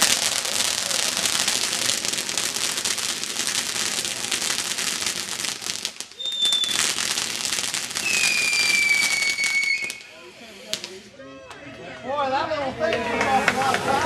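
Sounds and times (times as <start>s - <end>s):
fireworks crackling: 0.0s - 11.2s, 13.0s - 14.0s
high-pitched whistle: 6.2s - 6.8s, 8.0s - 10.2s.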